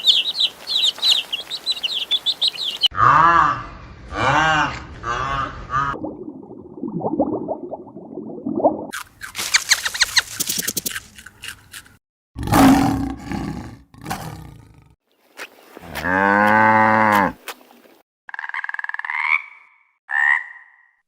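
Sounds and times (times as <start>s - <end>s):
loud rough animal call: 2.9s - 6.0s.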